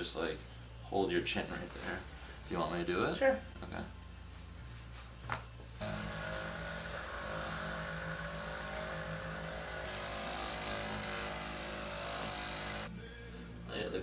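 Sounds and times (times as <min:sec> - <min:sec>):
small electric motor humming: 0:05.8 - 0:12.9.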